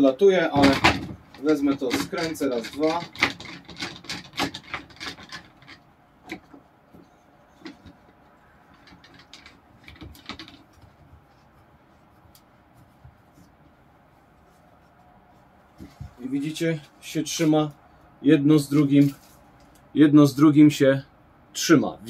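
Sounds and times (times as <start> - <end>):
plywood pieces knocking and rubbing: 0.5 - 13.8, 15.7 - 16.5.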